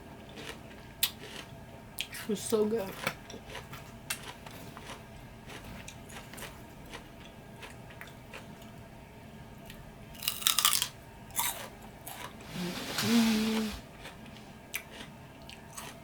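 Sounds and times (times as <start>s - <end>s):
chewing food: 0.2s - 8.8s, 13.8s - 16.0s
loud crunching bites: 10.2s - 11.6s.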